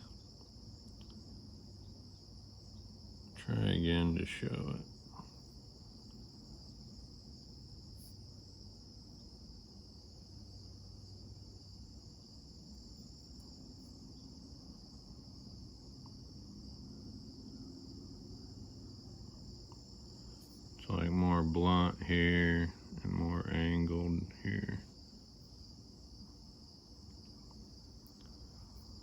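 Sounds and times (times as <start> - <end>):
crickets chirping: 0.0 - 29.0.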